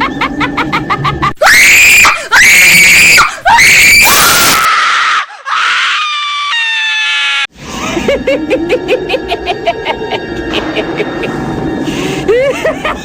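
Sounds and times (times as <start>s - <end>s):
high-pitched screams: 1.4s - 7.5s
steady pitched tone: 7.6s - 13.0s.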